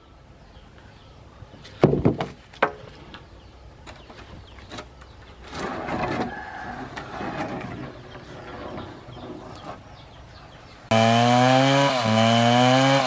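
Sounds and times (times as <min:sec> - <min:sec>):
heavy wooden knocks and thuds: 0:01.8 - 0:02.8.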